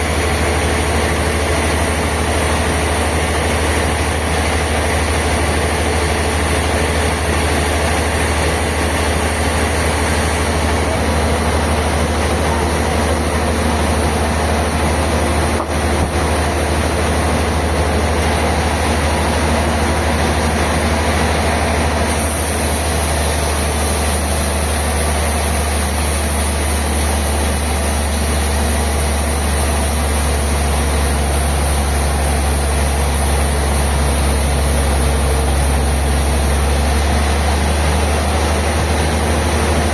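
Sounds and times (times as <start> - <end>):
sawmill machinery running: 0.0 - 39.9.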